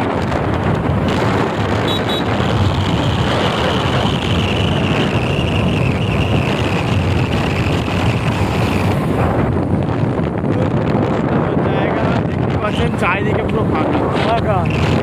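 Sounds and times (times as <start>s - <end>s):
motorcycle engine: 0.0s - 10.4s
road noise: 0.0s - 15.0s
wind buffeting microphone: 0.0s - 15.0s.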